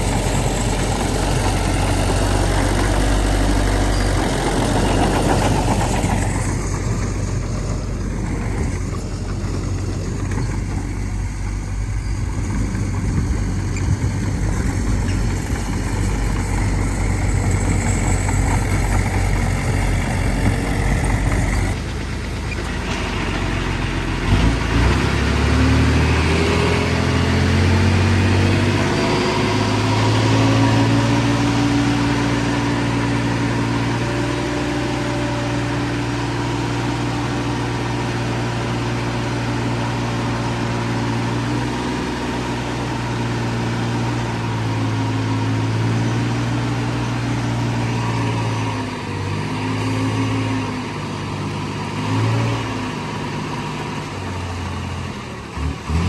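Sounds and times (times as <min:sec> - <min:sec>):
engine revving: 0:00.0 - 0:56.0
heavy diesel engine running: 0:00.0 - 0:56.0.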